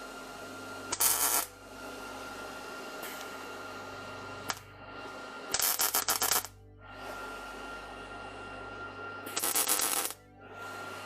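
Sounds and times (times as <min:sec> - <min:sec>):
steady low hum: 0:00.0 - 0:11.0
welding crackle: 0:00.9 - 0:01.5, 0:05.5 - 0:06.5, 0:09.4 - 0:10.2.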